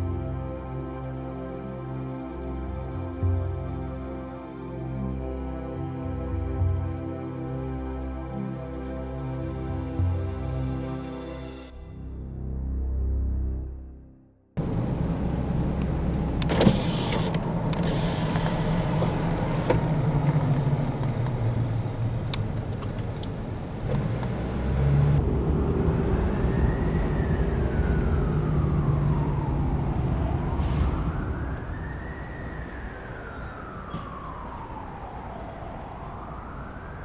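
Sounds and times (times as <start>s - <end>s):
car engine running: 14.6s - 25.2s
sharp clicks: 14.6s - 25.2s
siren wailing: 26.3s - 37.0s.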